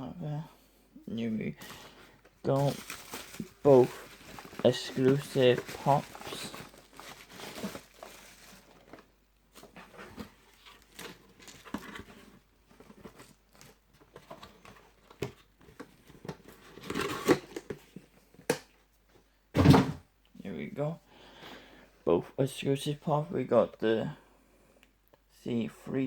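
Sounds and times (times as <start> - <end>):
packaging crinkling and rustling: 1.7 - 17.8.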